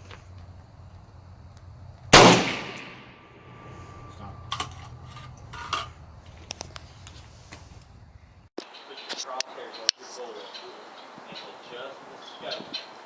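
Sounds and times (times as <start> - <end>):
rifle shot ringing out: 2.1 - 3.6.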